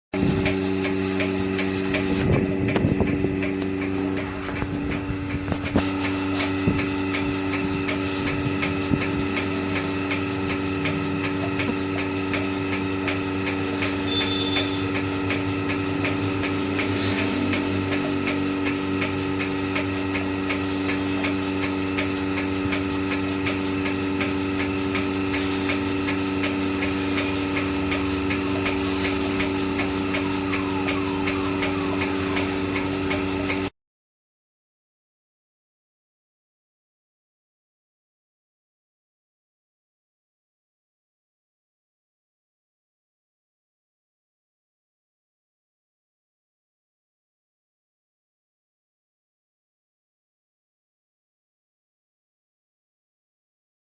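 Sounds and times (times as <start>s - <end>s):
milking machine hum: 0.1s - 33.8s
fast even ticking: 6.8s - 33.7s.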